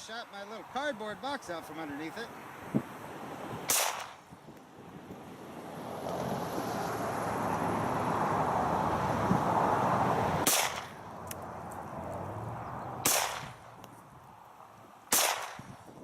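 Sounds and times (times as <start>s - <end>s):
pistol shot: 3.7s - 4.2s, 10.4s - 11.0s, 13.0s - 13.6s, 15.1s - 15.7s.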